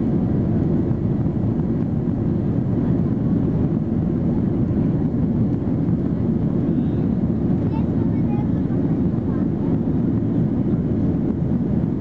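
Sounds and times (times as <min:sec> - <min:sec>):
airplane cabin rumble: 0:00.0 - 0:12.0.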